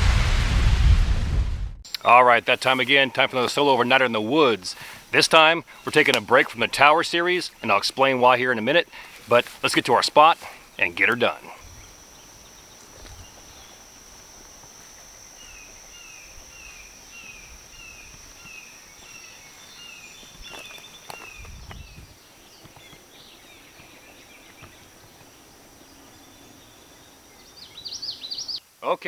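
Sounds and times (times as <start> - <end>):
brief low rumble: 0.0 - 1.8
insect buzzing on a high note: 2.0 - 29.0.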